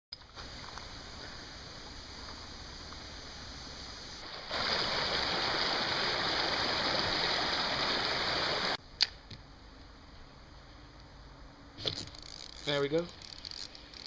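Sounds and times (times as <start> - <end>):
creek water rushing: 2.6 - 8.8.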